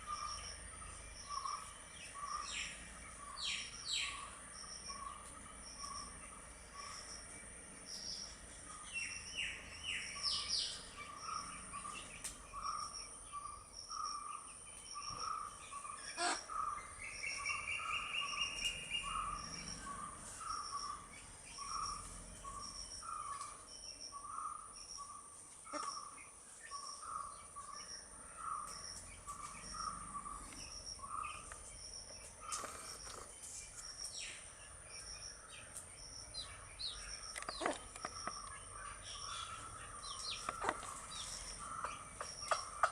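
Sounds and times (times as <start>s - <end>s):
insects chorus: 0.0s - 42.9s
soft chirping call: 0.0s - 42.9s
chicks peeping: 35.7s - 42.9s.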